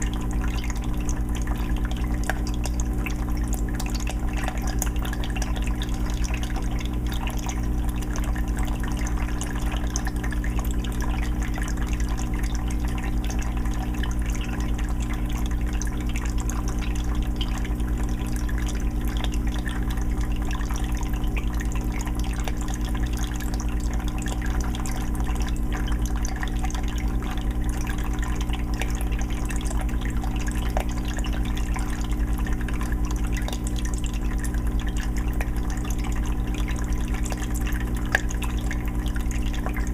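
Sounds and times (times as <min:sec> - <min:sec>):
aquarium filter hum: 0:00.0 - 0:39.9
water trickling into fish tank: 0:00.0 - 0:39.9.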